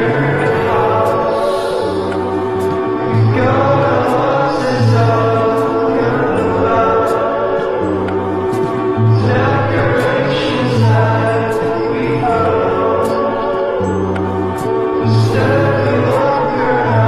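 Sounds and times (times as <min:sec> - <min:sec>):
choir singing held chords: 0:00.0 - 0:17.0.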